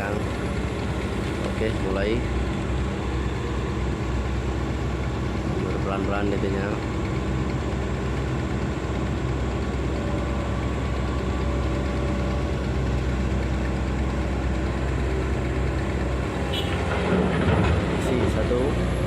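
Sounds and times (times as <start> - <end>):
excavator diesel engine running: 0.0 - 19.0.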